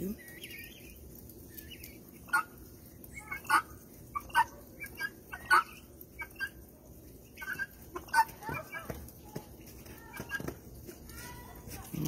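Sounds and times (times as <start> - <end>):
guineafowl harsh rasping calls: 1.8 - 2.6, 3.2 - 6.6, 7.4 - 9.0.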